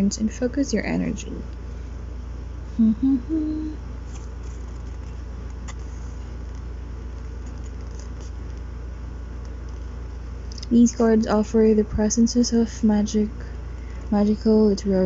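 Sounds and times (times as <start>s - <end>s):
steady low background hum: 0.0s - 15.0s
person humming notes: 2.7s - 3.8s.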